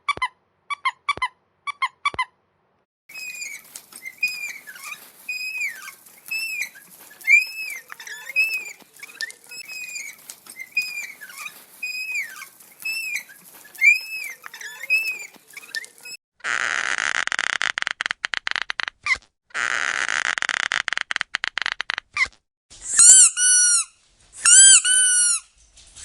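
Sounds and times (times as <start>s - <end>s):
rubber squeaky toy squeaking: 0.0s - 2.4s, 3.1s - 25.5s
faint clicks: 3.1s - 16.2s.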